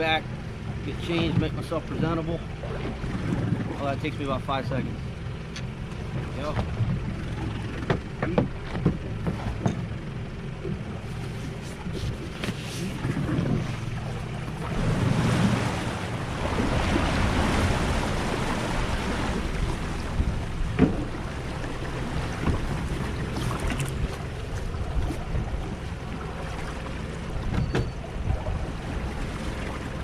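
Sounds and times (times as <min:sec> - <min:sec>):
low boat engine hum: 0:00.0 - 0:30.0
waves washing against hull: 0:00.0 - 0:30.0
wind buffeting microphone: 0:27.3 - 0:29.2.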